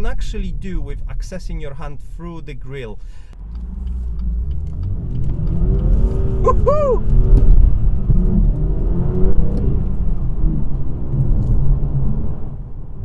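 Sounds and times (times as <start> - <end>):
car engine accelerating hard: 3.4 - 13.0.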